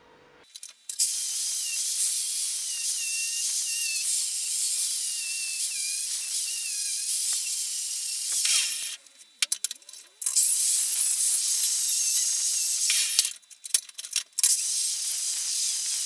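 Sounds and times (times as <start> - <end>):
high hiss of gas jet: 1.0 - 9.0, 10.4 - 13.3, 14.5 - 16.0.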